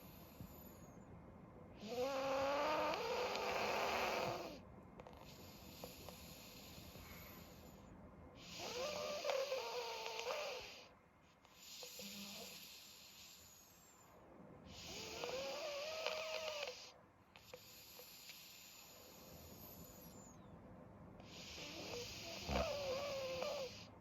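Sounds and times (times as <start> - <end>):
faint dog breath: 0.0 - 1.1, 1.7 - 20.5, 21.2 - 24.0
dog snoring loudly: 1.8 - 7.7, 8.4 - 10.9, 11.6 - 13.7, 14.7 - 20.2, 21.2 - 23.9.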